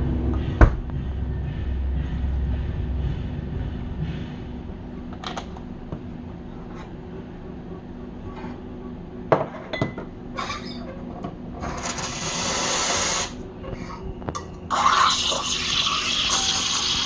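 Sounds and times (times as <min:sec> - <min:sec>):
espresso steam wand hissing: 0:11.8 - 0:13.4, 0:14.7 - 0:17.0.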